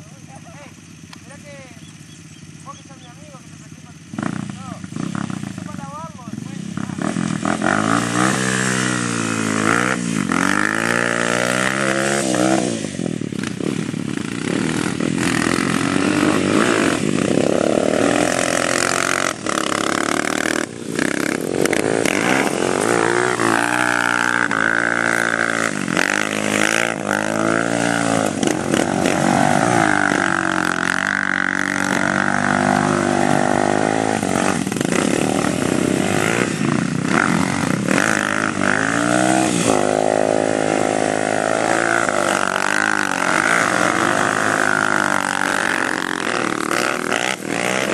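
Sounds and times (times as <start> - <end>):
atv engine revving: 0.0 - 47.9.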